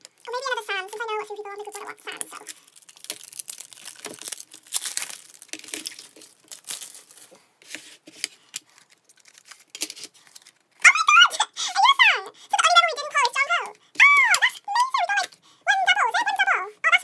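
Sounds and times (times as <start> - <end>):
packaging rustling and crinkling: 0.0 - 10.9.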